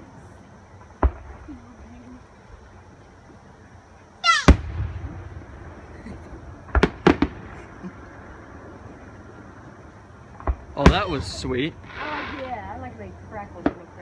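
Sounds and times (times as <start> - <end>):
fireworks exploding with bangs: 0.9 - 1.8, 4.4 - 8.3, 10.3 - 12.6
firework squeal: 4.2 - 4.6, 10.8 - 12.7.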